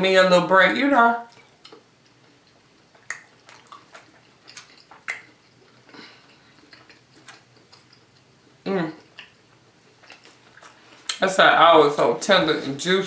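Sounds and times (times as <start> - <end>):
wet chewing mouth clicks: 1.3 - 8.3, 10.0 - 11.2.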